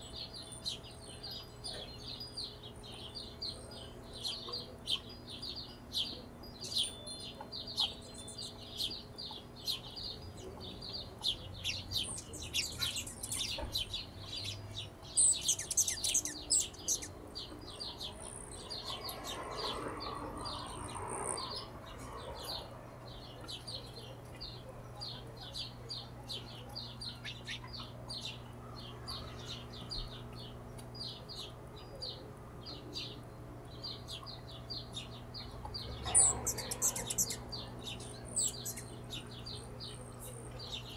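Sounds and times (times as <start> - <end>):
hummingbirds chipping: 0.0 - 40.9.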